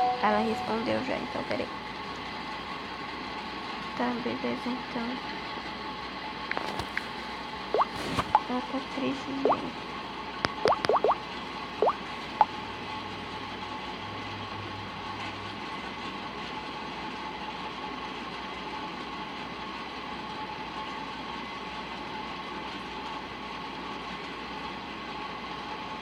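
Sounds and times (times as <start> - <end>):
steady background hum: 0.0 - 14.2.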